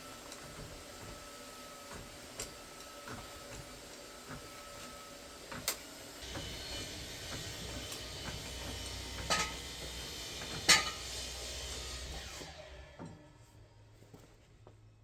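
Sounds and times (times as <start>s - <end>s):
hydraulic jack rumble: 5.6s - 13.2s
sharp metal clanks: 10.7s - 11.1s.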